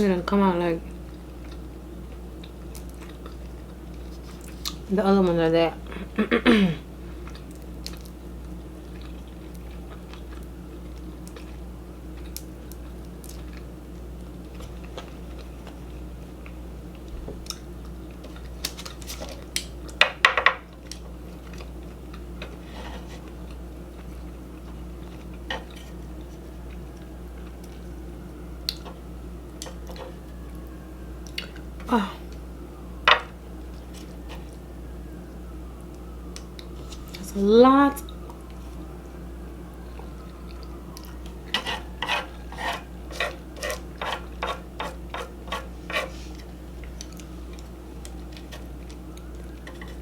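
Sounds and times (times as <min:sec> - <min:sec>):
steady low hum: 0:00.0 - 0:50.0
chewing: 0:01.1 - 0:04.9, 0:07.1 - 0:20.0, 0:20.7 - 0:28.0, 0:31.2 - 0:32.4, 0:39.8 - 0:50.0.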